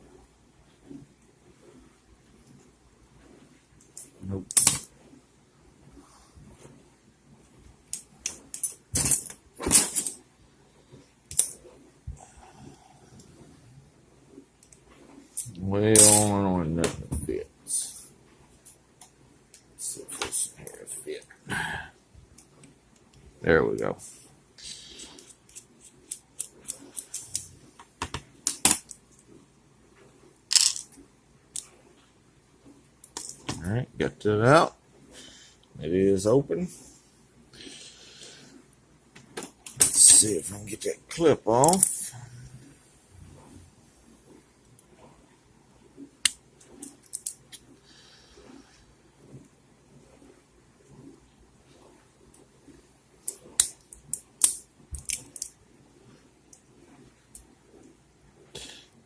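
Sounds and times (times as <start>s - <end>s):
allen keys clinking and rattling: 8.2s - 10.2s.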